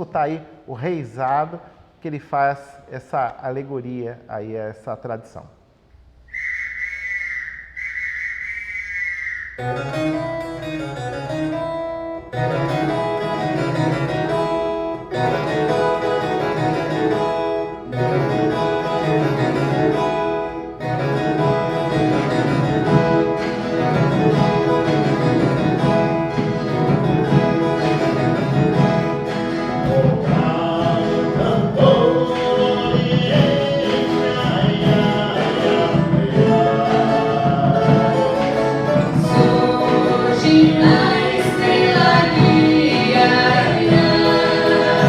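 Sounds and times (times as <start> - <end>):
whistle blowing held note: 6.3 - 9.8
strummed guitars ensemble: 9.6 - 45.0
voices singing: 17.8 - 45.0.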